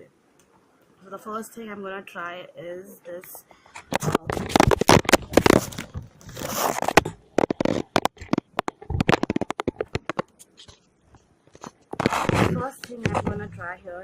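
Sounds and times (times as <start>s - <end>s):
snack packaging crackling: 3.9s - 13.0s.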